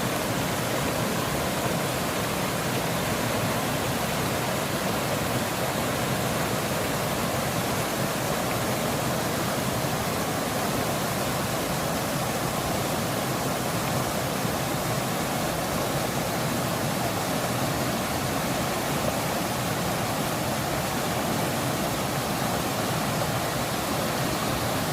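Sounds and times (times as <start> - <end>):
stream rushing over rocks: 0.0 - 24.9.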